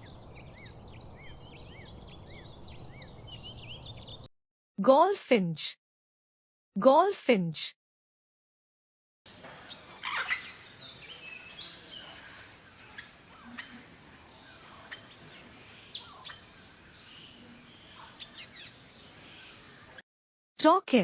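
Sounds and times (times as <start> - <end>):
bird chirping and twittering: 0.0 - 4.3, 9.3 - 20.0
faint steady hiss: 9.3 - 20.0.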